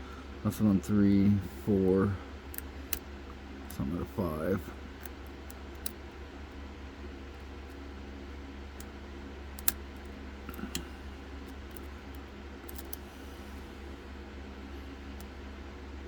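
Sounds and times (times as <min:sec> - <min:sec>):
steady low hum: 0:00.0 - 0:16.0
metallic lock picking clicks: 0:12.7 - 0:13.0.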